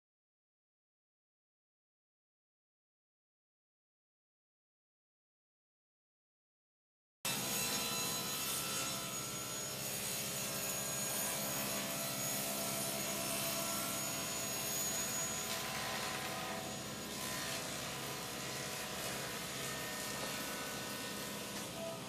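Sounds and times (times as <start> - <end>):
power tool cutting wood: 7.3 - 22.0.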